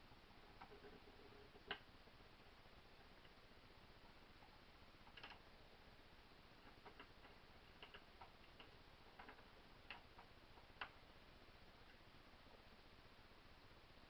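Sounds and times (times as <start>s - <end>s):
low room hiss: 0.0s - 14.0s
small metal parts clicking: 4.4s - 5.5s, 6.6s - 11.0s.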